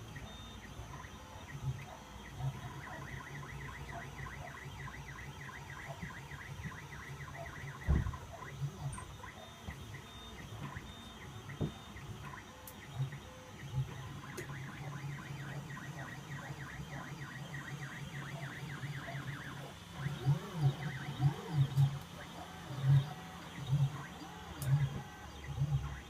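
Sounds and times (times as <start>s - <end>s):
stepper motors whining: 0.0s - 26.0s.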